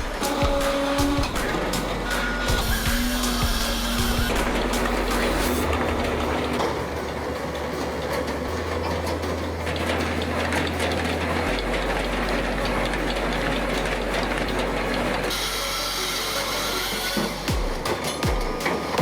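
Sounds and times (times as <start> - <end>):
background music bass line: 0.0 - 19.0
machinery clattering: 0.0 - 19.0.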